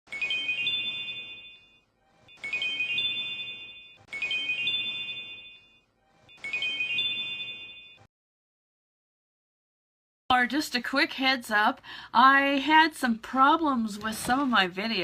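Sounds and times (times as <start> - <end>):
electronic ringtone chime: 0.1 - 8.1.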